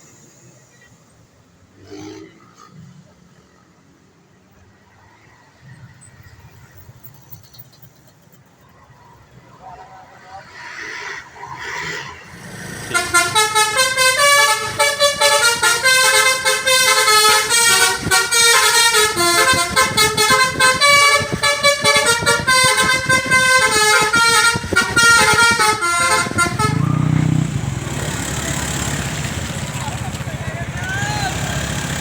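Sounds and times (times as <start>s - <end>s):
multi-tone bus horn tune: 12.3s - 32.0s.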